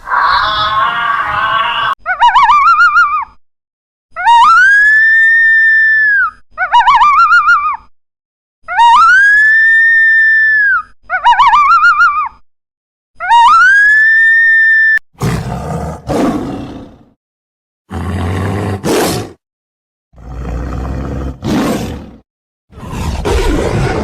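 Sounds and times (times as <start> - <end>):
siren-like electronic wail: 0.0 - 2.0
big cat roaring: 15.2 - 17.1, 17.9 - 19.4, 20.2 - 24.0.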